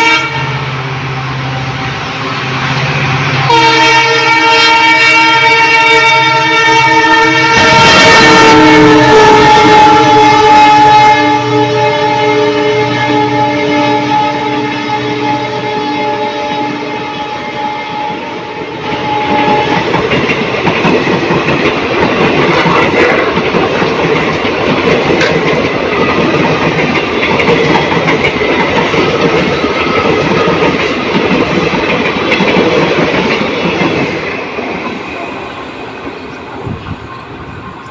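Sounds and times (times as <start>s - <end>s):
train horn: 0.0s - 20.1s
train wheels clattering: 13.9s - 37.9s.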